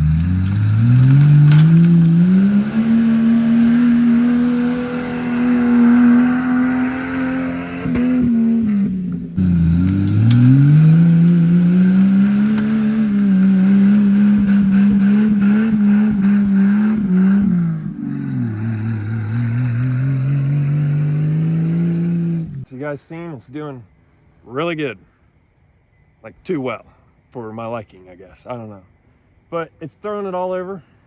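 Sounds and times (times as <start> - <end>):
car engine revving hard: 0.0 - 22.7.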